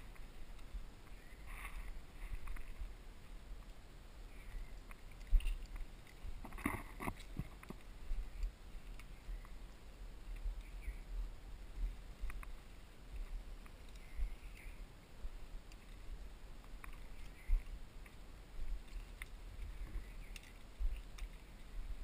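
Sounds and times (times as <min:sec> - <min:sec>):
low wind rumble: 0:00.0 - 0:22.0
handheld camera knocks and rubbing: 0:06.4 - 0:07.8.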